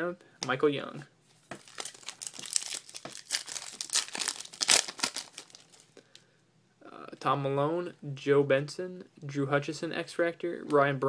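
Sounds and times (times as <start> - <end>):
foil wrapper tearing and crinkling: 1.6 - 5.9.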